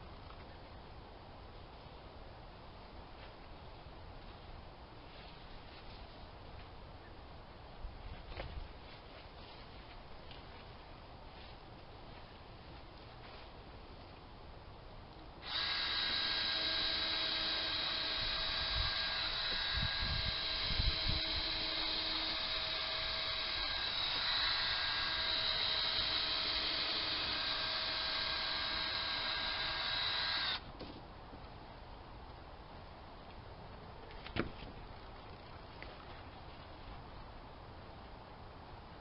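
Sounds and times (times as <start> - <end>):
electric drill whining: 15.4 - 30.6.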